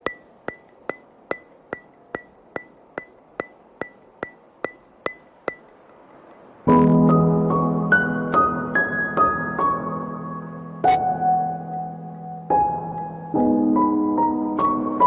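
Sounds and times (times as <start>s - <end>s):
sharp ringing ticks: 0.0s - 6.5s
piano background music: 6.6s - 15.0s.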